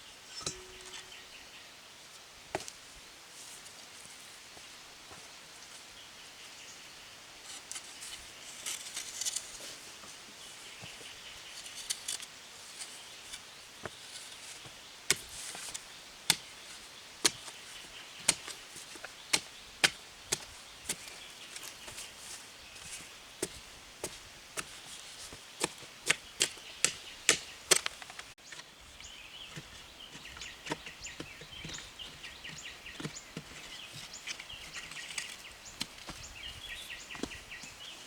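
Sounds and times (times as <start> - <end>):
soft scraping and rustling: 7.4 - 15.8.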